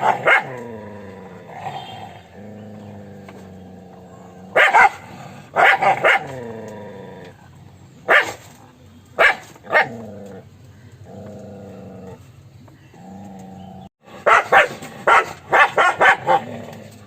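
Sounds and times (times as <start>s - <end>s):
dog barking: 0.0s - 0.6s, 4.5s - 6.4s, 8.1s - 8.4s, 9.2s - 10.0s, 14.2s - 16.5s.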